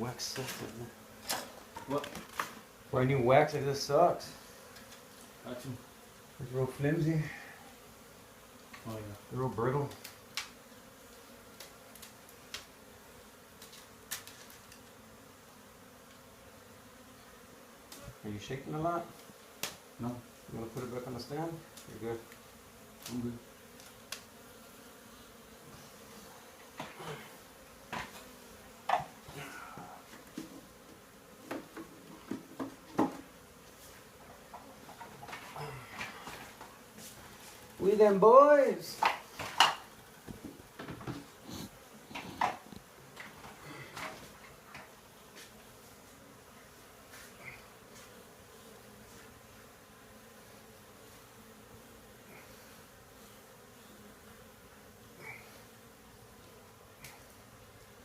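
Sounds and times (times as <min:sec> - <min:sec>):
honey bees buzzing: 0:00.0 - 0:58.0
sharp knocks and clunks: 0:31.4 - 0:33.3, 0:39.0 - 0:41.3.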